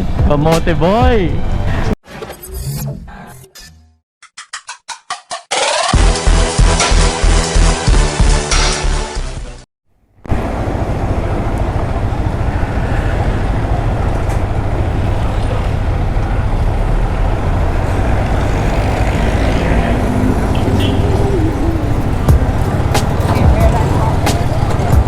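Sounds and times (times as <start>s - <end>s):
motorcycle engine and road noise: 10.2s - 25.0s
wind rumble: 10.3s - 25.0s.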